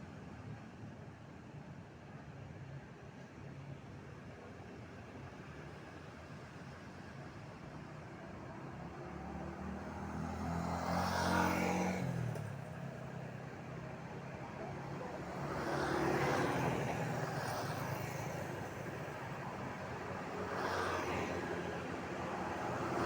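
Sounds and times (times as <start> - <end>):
vehicles passing by: 8.3 - 23.0.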